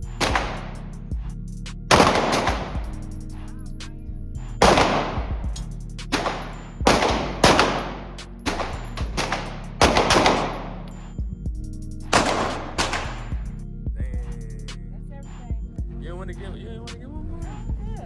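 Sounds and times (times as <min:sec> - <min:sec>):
background music: 0:00.0 - 0:18.0
gunshots with ringing echo: 0:00.2 - 0:00.8, 0:01.9 - 0:03.0, 0:04.6 - 0:10.8, 0:12.1 - 0:13.4.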